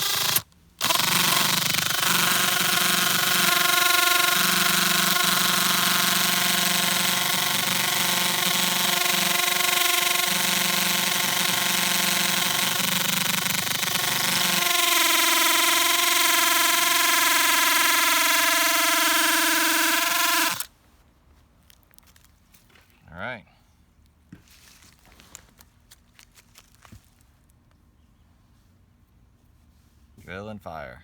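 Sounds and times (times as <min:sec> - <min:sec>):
hammer drill whining: 0:00.0 - 0:20.7.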